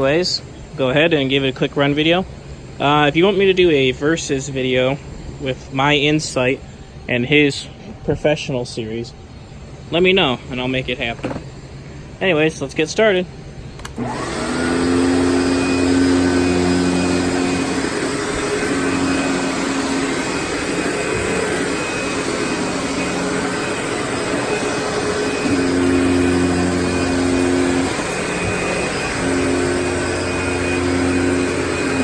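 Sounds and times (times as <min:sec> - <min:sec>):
vacuum cleaner running: 0:11.2 - 0:11.5, 0:13.7 - 0:32.0.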